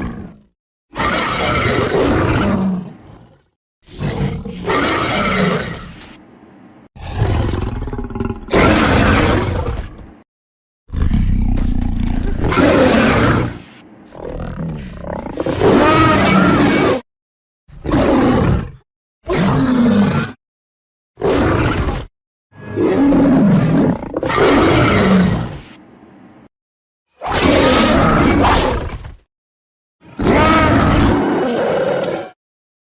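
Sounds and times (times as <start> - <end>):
creature roars: 0.0 - 6.2, 7.0 - 10.1, 10.9 - 17.0, 17.8 - 20.4, 21.2 - 25.8, 27.2 - 29.1, 30.0 - 32.4.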